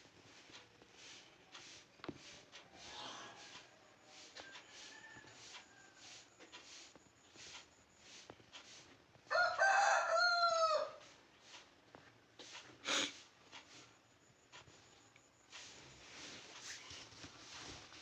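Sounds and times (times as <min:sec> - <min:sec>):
rooster crowing: 0:02.9 - 0:06.3, 0:09.3 - 0:11.1.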